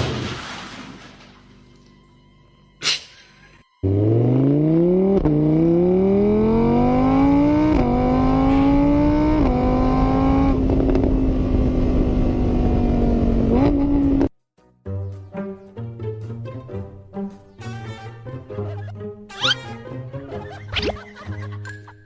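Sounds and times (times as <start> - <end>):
vehicle engine accelerating: 3.8 - 14.3.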